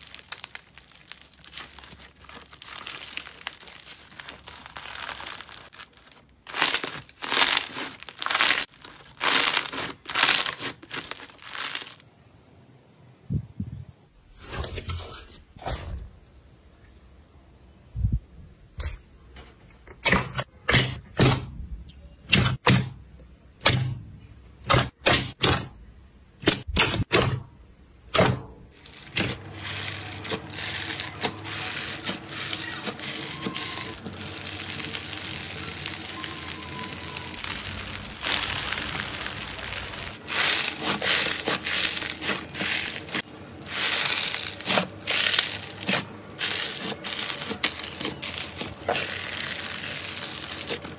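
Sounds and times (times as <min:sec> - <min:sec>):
slime popping and crackling: 0:00.0 - 0:12.0, 0:28.8 - 0:50.9.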